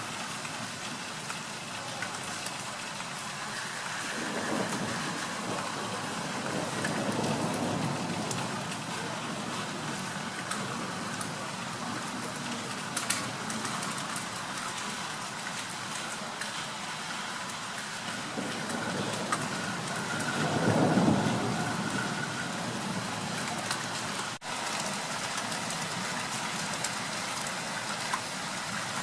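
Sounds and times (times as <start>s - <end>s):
steady rain falling: 0.0s - 29.0s
low thunder rumble: 3.6s - 14.2s, 18.1s - 24.3s.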